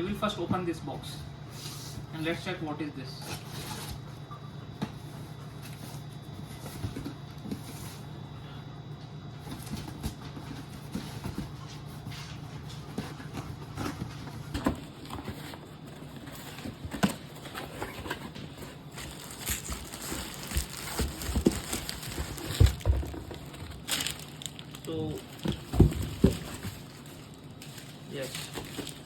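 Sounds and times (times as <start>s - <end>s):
cardboard box knocks and rustles: 19.2s - 23.8s, 25.4s - 26.8s.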